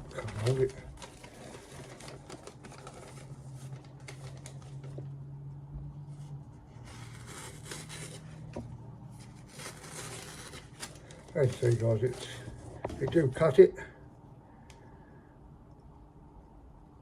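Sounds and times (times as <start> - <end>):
low steady hum: 0.0 - 17.0
axe cutting paper: 6.9 - 8.5.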